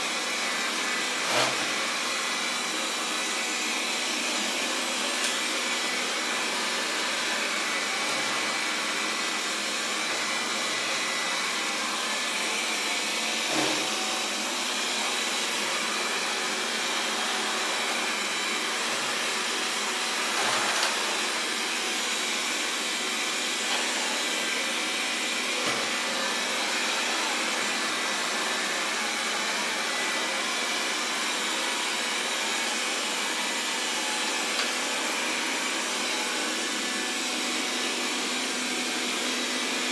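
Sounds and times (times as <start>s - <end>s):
robot vacuum fan whirr: 6.2s - 30.4s.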